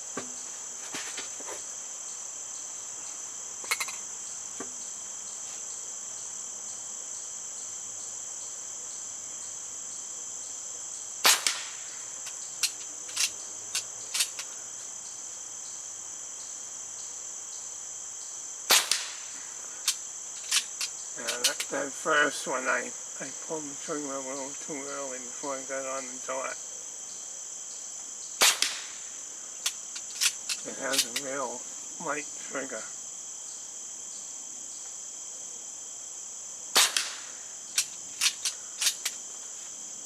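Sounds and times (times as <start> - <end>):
insects chirring: 0.0 - 40.0
air pistol shot: 11.2 - 12.0, 18.7 - 19.4, 28.4 - 29.2, 36.8 - 39.1.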